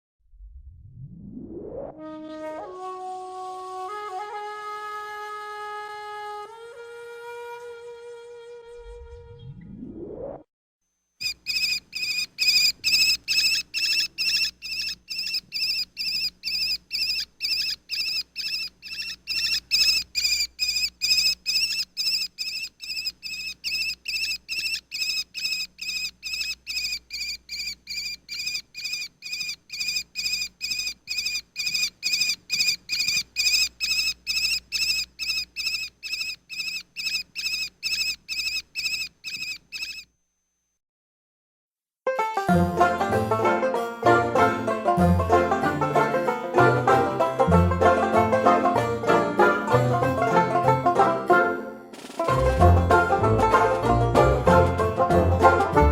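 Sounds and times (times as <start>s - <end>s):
wren chirping: 11.2s - 40.2s.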